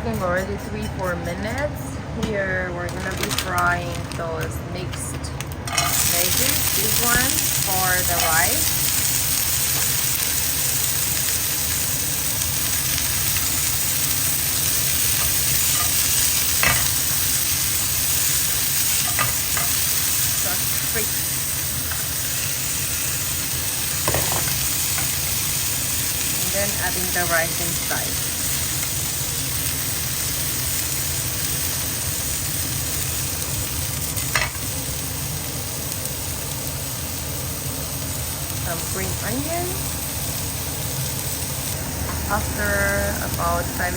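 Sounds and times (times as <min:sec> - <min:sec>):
vegetables sizzling in a pan: 0:02.9 - 0:04.5, 0:05.6 - 0:43.9.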